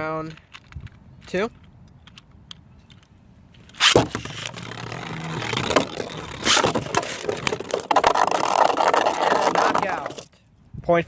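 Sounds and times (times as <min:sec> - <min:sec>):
spinning tops launched with rip: 0:03.7 - 0:10.0
spinning tops scraping plastic floor: 0:03.8 - 0:10.3.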